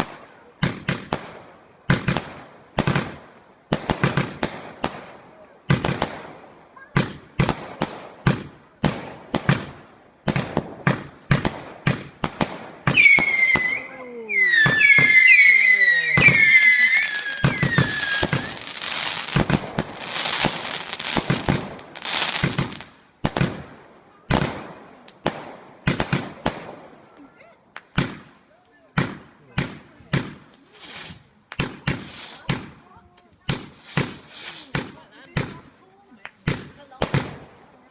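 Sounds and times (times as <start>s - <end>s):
crackling firework hiss: 0.0s - 23.8s, 29.0s - 35.6s
firework bangs: 0.0s - 27.0s, 27.8s - 32.8s, 33.4s - 35.7s, 36.3s - 37.6s
shrill gliding firework whistles: 12.9s - 18.9s.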